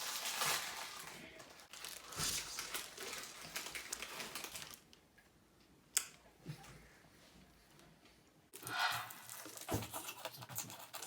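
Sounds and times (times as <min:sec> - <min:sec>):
packaging crinkling: 0:00.0 - 0:05.0.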